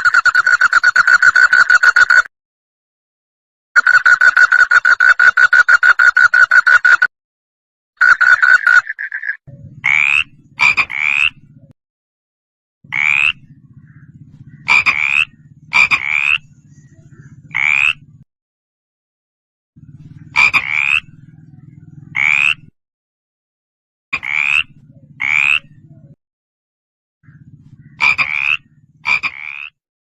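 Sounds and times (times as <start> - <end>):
frog croaking: 0.0 - 2.3, 3.8 - 7.1, 8.0 - 11.7, 12.9 - 16.5, 17.3 - 18.2, 19.8 - 22.8, 24.2 - 25.9, 27.2 - 29.8.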